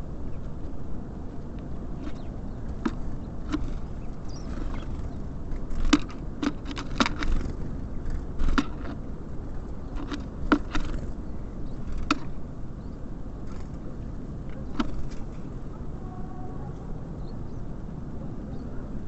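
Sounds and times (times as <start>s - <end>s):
birds pecking at seed: 0.0s - 12.6s, 13.4s - 15.8s
low steady rumble: 0.0s - 19.0s.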